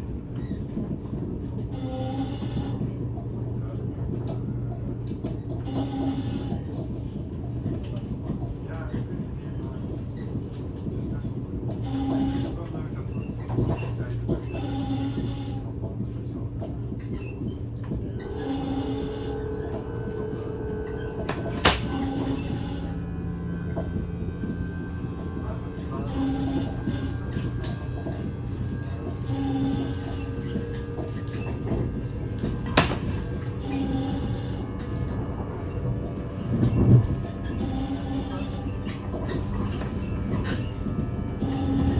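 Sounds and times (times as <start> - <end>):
electric train rumbling: 0.0 - 41.9
humming drive tone: 18.1 - 41.9.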